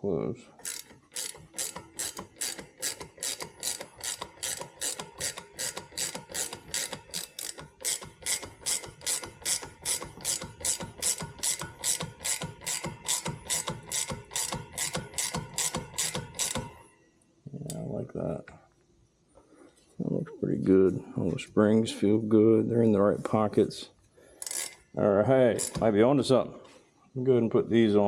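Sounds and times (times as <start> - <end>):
ratchet wrench clicking: 0.6 - 16.8, 24.4 - 24.9, 25.6 - 25.9.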